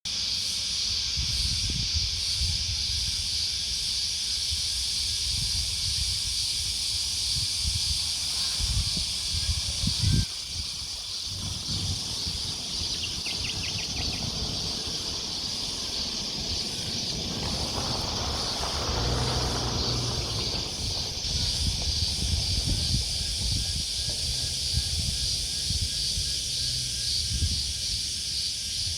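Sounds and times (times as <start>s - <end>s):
insects chorus: 0.1s - 28.9s
rapid chirps: 7.3s - 23.6s
vehicle approaching: 7.8s - 28.8s
irregular low rumble: 9.8s - 26.5s.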